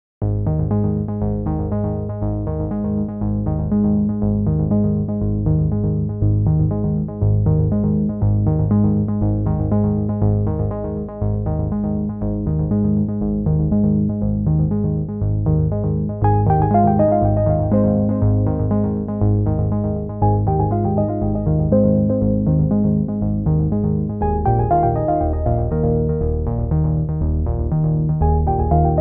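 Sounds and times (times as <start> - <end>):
held bass: 15.2 - 29.0
repeating synthesizer notes: 16.2 - 27.2, 28.1 - 29.0.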